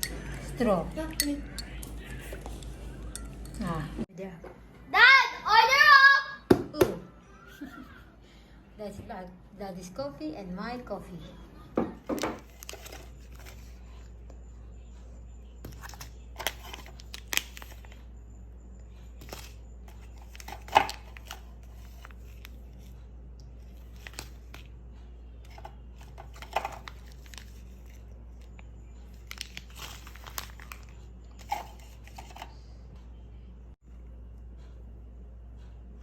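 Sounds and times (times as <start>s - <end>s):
steady low hum: 12.8s - 36.0s.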